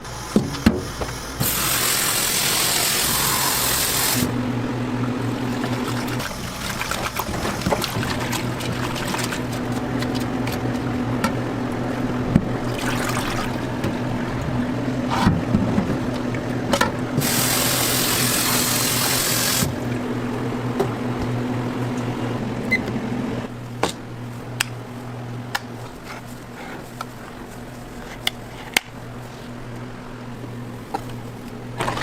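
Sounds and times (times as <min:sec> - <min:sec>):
loud cooking hiss: 0:00.0 - 0:04.4, 0:17.2 - 0:19.8
steady low hum: 0:00.0 - 0:32.0.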